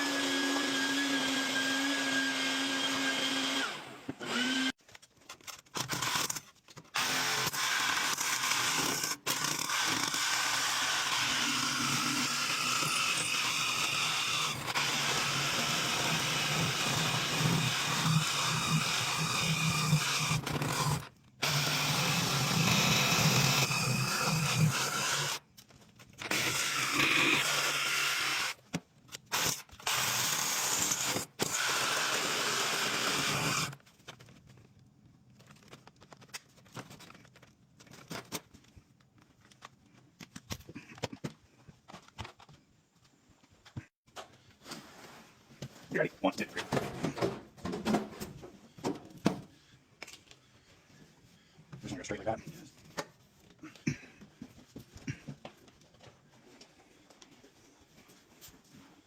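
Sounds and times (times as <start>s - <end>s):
small electric motor tool humming: 7.0s - 25.4s.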